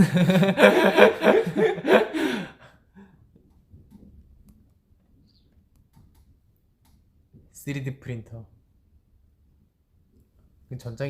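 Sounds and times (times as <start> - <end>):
person speaking: 0.0 - 2.6.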